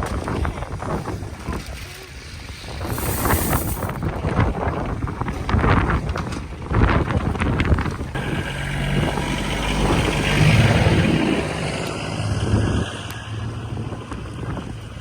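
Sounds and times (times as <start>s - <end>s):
vehicle engine running: 7.6s - 15.0s.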